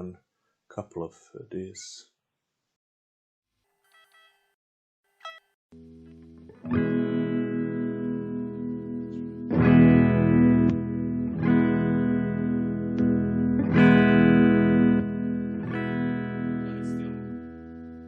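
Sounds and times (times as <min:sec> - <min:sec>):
electric guitar chords ringing: 0:05.8 - 0:18.0.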